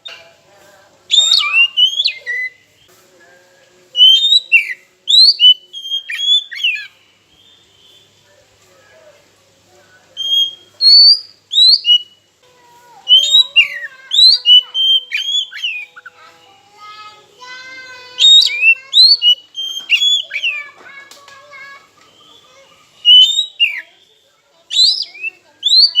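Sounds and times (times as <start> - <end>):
bird singing whistled notes: 1.1 - 2.9, 4.0 - 8.2, 10.2 - 12.3, 13.1 - 16.2, 18.2 - 20.8, 22.2 - 26.0
buzzy run of rapid bird notes: 13.1 - 24.0.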